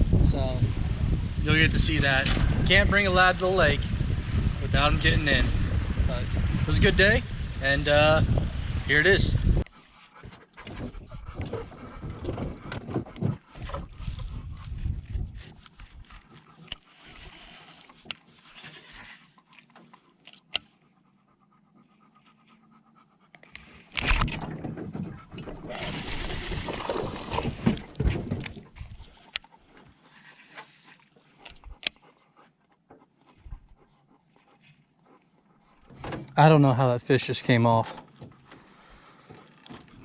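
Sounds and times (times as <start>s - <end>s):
dog panting: 9.6s - 17.3s, 18.0s - 23.9s, 28.8s - 36.8s, 38.2s - 40.0s.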